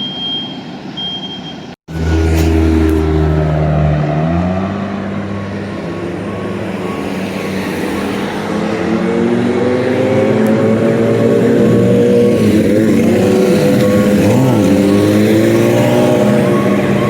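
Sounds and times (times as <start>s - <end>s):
short high beeps: 0.0s - 2.5s
road noise: 0.0s - 17.0s
heavy vehicle engine running: 1.9s - 17.0s.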